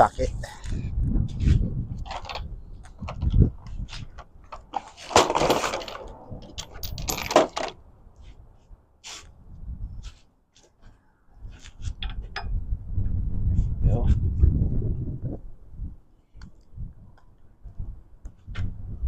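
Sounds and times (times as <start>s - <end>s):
rattling scrapes of tools: 4.6s - 7.8s.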